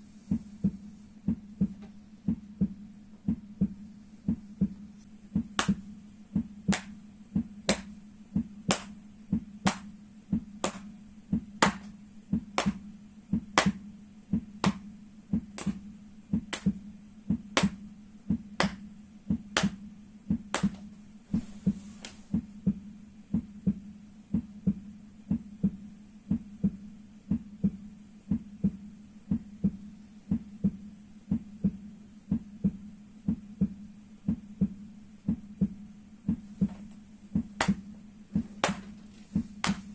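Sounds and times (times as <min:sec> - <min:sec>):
dull heartbeat-like thumping: 0:00.3 - 0:39.9.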